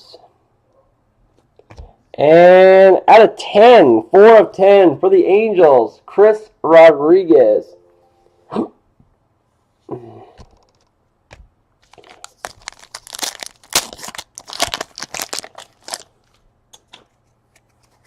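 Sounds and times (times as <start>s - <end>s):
plastic wrapper tearing and crinkling: 11.8s - 16.4s.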